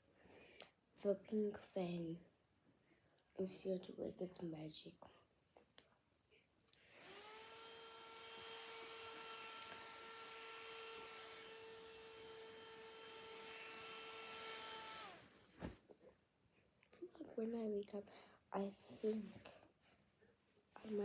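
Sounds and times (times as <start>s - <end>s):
electric fan whirring: 6.8s - 15.8s.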